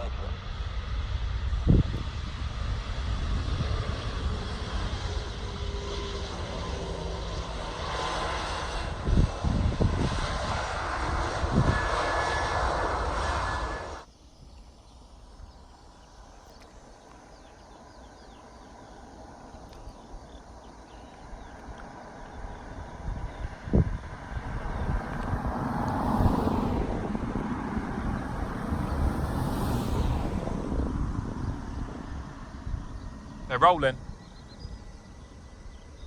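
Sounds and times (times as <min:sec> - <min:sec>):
aircraft engine rumble: 0:00.0 - 0:36.0
wind thumps on microphone: 0:01.4 - 0:04.2, 0:08.8 - 0:12.0.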